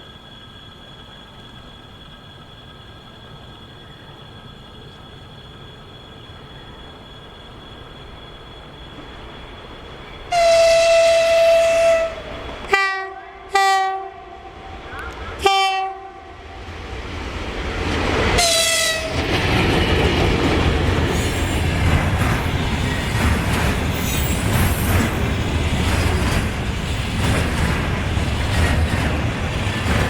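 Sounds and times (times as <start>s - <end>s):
train rumbling: 0.0s - 30.0s
locomotive horn blasts: 10.3s - 14.5s, 15.4s - 16.4s, 18.4s - 19.2s
wheels clacking on rail joints: 17.0s - 30.0s.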